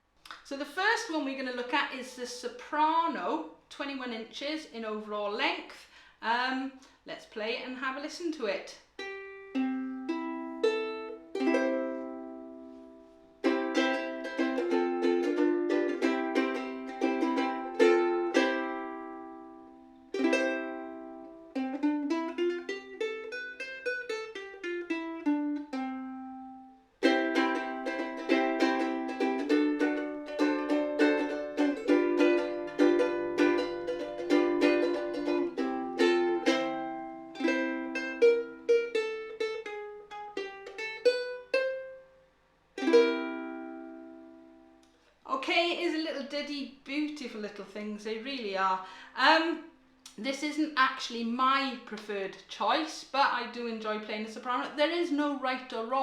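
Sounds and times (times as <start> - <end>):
ukulele strummed and picked: 9.0 - 42.2, 42.8 - 44.9.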